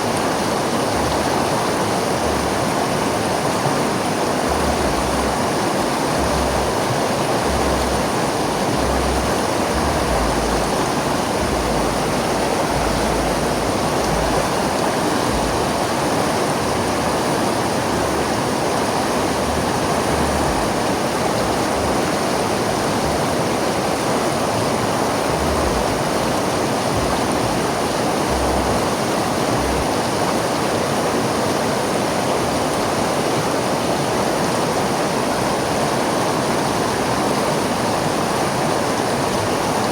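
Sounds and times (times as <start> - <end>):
river water rushing: 0.0 - 39.9
low rumbling: 0.9 - 2.8, 4.4 - 17.2, 17.9 - 23.3, 25.2 - 30.0.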